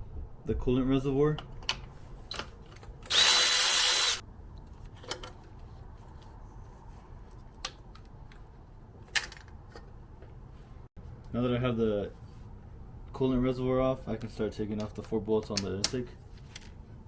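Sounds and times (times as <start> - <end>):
power tool whining: 3.1 - 4.2.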